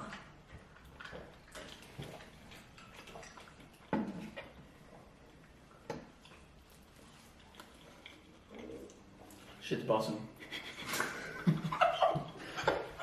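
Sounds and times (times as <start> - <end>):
eating and food handling: 0.0 - 13.0.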